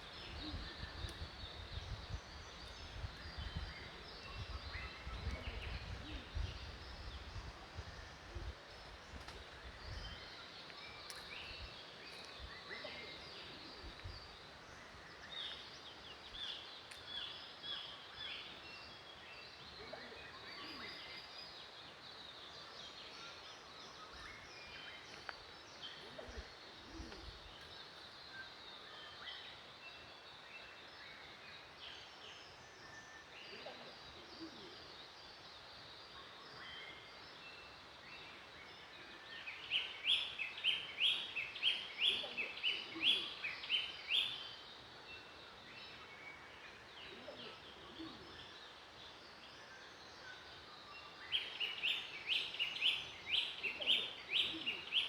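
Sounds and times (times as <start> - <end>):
birds chirping and singing: 0.0 - 55.0
steady outdoor hiss: 0.0 - 55.0.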